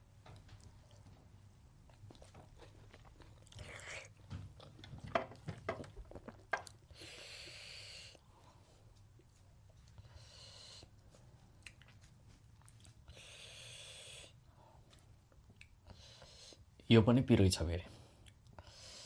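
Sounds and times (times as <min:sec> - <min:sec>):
person chewing food: 0:00.3 - 0:07.0, 0:08.1 - 0:13.3, 0:14.8 - 0:16.2
breathy hisses: 0:07.0 - 0:08.2, 0:13.1 - 0:14.4.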